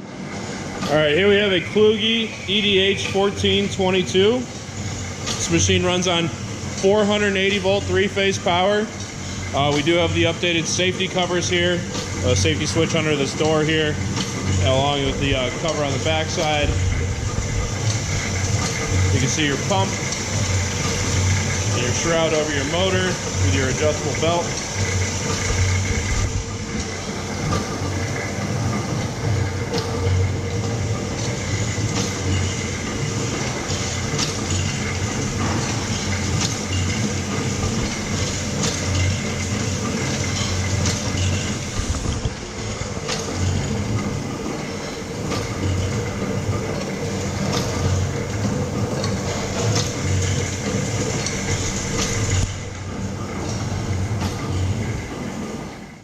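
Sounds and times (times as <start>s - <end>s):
motor and pump hum: 0.0s - 56.0s
press clacking: 0.8s - 55.5s.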